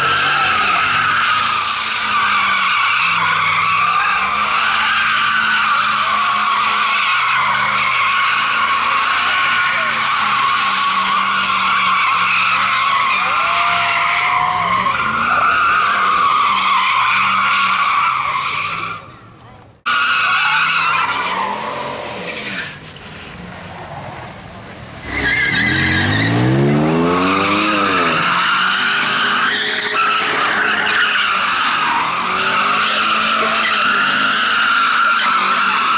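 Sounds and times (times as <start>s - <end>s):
car tires squealing: 0.0s - 35.9s
car engine revving high: 25.0s - 35.9s.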